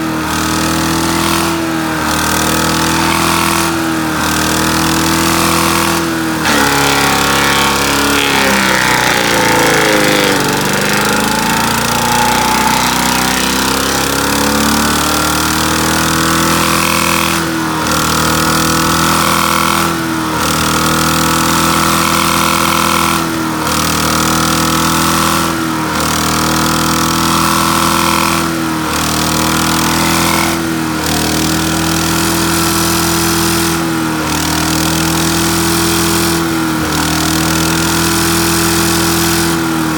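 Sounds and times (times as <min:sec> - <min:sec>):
wood chipper engine bogging down: 0:06.4 - 0:17.3.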